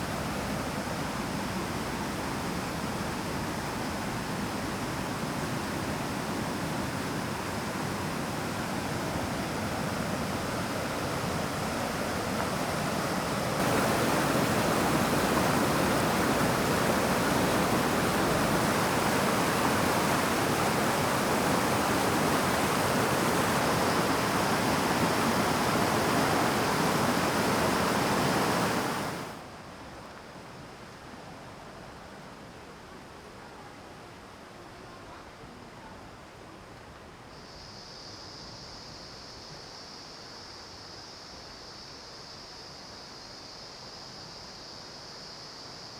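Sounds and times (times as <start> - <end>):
waterfall rushing: 11.0 - 29.4.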